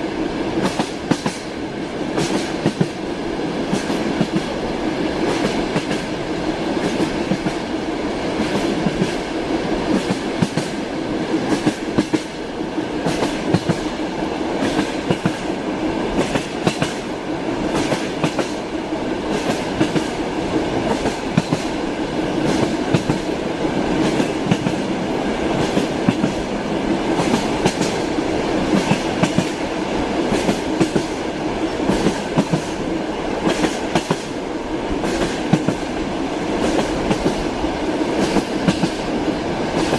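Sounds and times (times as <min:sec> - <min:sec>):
train wheels clattering over rail joints: 0:02.2 - 0:03.0, 0:13.0 - 0:13.9, 0:23.9 - 0:24.9, 0:38.2 - 0:39.0.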